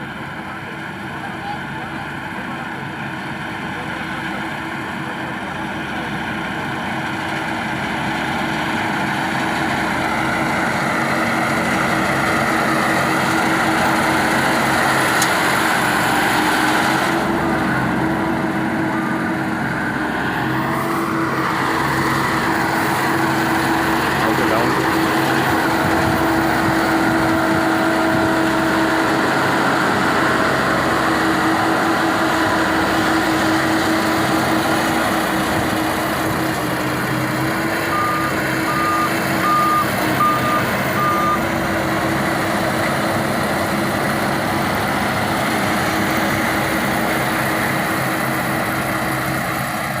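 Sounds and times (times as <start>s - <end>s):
combine harvester engine drone: 0.0s - 50.0s
short beeps: 37.9s - 41.4s.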